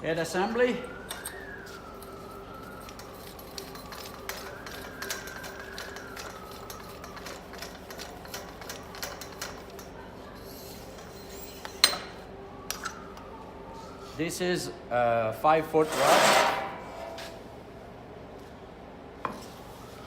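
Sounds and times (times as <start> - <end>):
steel parts clinking and knocking: 2.8 - 10.0, 10.9 - 12.2.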